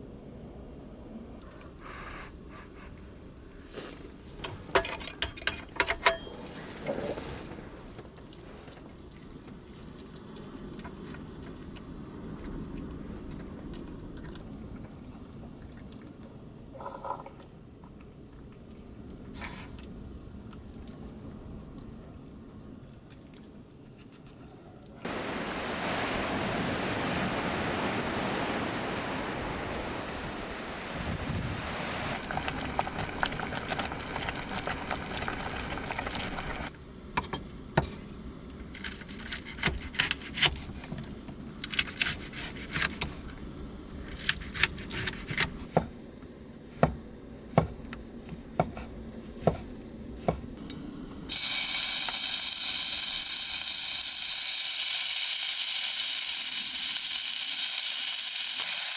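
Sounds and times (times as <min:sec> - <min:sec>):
food sizzling: 0:29.4 - 0:36.7, 0:50.6 - 0:58.9.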